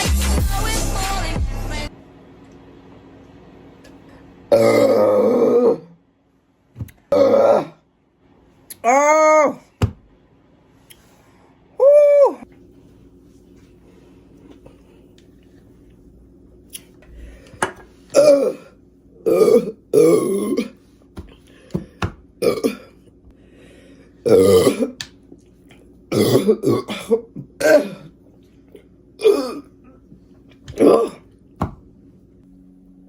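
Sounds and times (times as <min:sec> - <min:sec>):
woman burping: 0:04.5 - 0:05.9, 0:18.1 - 0:20.8, 0:22.4 - 0:23.0, 0:24.2 - 0:25.0, 0:26.1 - 0:28.1, 0:29.2 - 0:29.8, 0:30.7 - 0:31.3.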